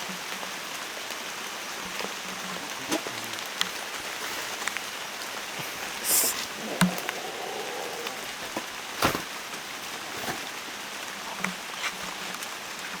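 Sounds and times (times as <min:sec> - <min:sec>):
rain falling on foliage: 0:00.0 - 0:13.0.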